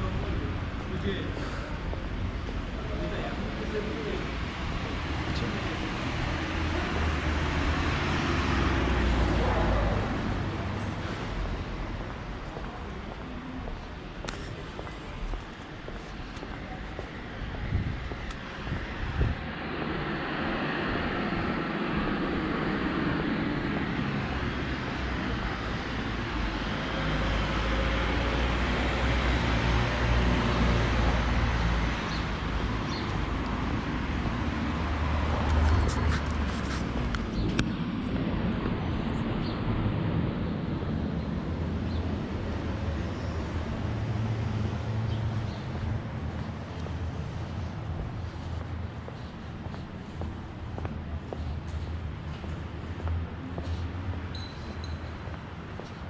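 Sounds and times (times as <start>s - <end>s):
passing vehicles: 0.0s - 56.0s
vehicle passing by: 4.4s - 13.0s.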